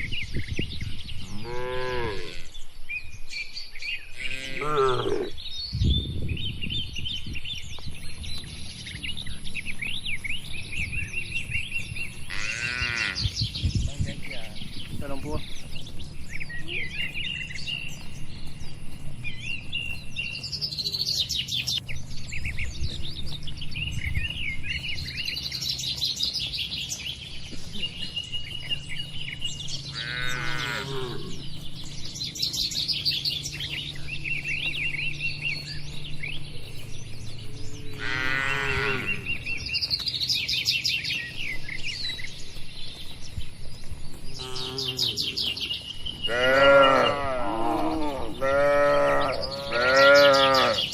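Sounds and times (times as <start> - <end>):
small birds chirping: 0.0 - 50.9
cattle mooing: 1.2 - 2.6, 4.2 - 5.4, 12.3 - 13.2, 29.9 - 31.4, 37.8 - 39.3, 44.4 - 45.4, 46.2 - 50.9.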